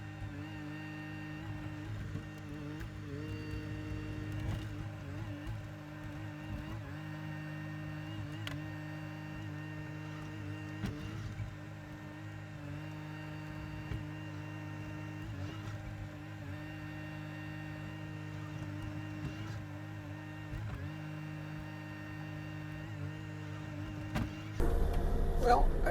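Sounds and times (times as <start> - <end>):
excavator diesel engine running: 24.6 - 25.9.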